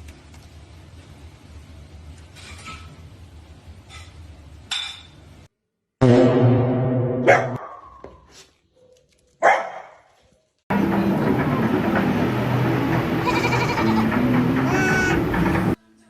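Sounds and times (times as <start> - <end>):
dog barking loudly: 7.3 - 8.0, 9.4 - 10.0.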